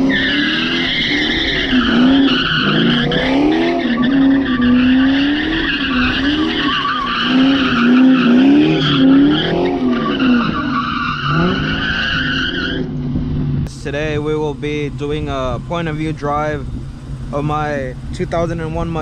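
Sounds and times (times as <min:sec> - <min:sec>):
car tires squealing: 0:00.0 - 0:13.0
engine revving: 0:00.0 - 0:19.0.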